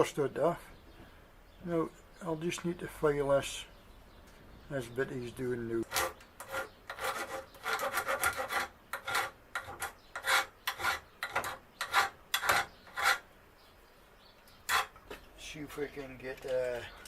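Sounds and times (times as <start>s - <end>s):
hand file rasping: 5.8s - 13.2s, 14.7s - 15.0s.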